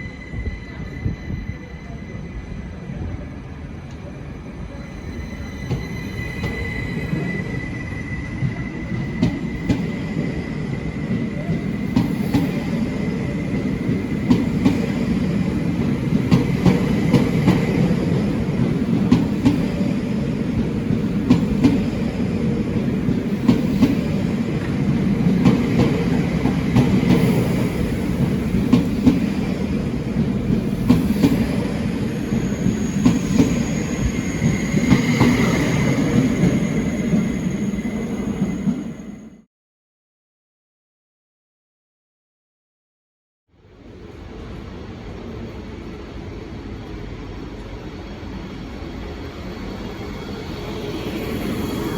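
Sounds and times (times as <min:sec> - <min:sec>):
high wheel squeal: 0:00.0 - 0:02.9, 0:04.8 - 0:11.7, 0:32.0 - 0:39.3
train rumbling along track: 0:00.0 - 0:39.4.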